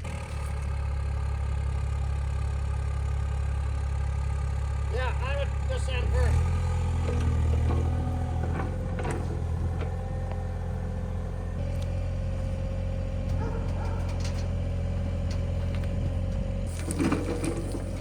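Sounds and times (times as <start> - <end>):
earthmoving machine engine running: 4.8 - 18.0
knocks: 13.2 - 14.7.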